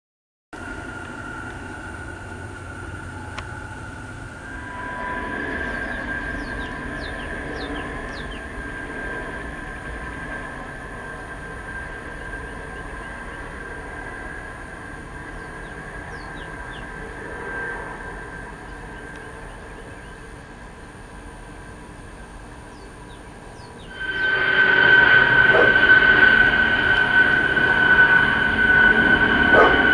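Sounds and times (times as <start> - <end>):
military aircraft flying overhead: 0.6 - 29.9
birds chirping: 5.4 - 8.5, 15.2 - 17.1, 22.6 - 24.6.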